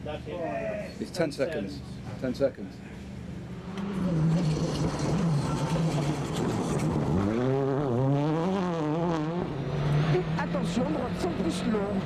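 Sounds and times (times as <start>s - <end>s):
turbocharged car engine revving: 3.6s - 12.0s.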